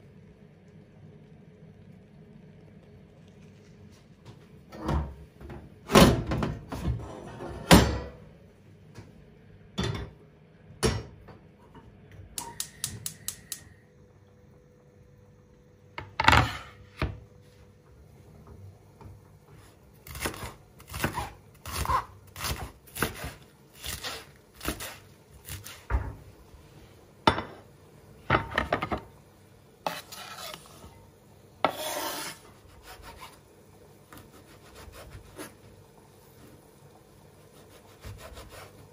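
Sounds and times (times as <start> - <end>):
repeated scraping strokes: 29.8 - 31.0, 31.6 - 33.4.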